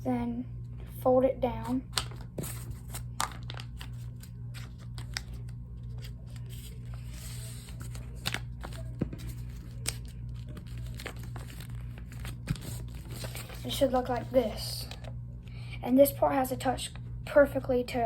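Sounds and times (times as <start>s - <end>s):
steady low hum: 0.0s - 18.0s
paper rustling and crinkling: 1.9s - 15.1s.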